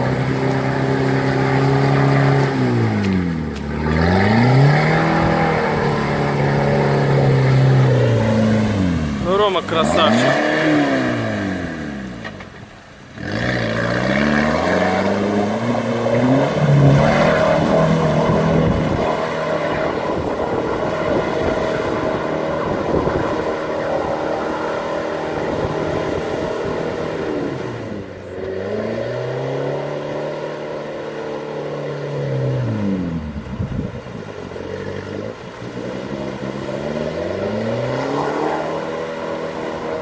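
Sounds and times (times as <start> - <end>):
off-road vehicle engine revving: 0.0 - 40.0.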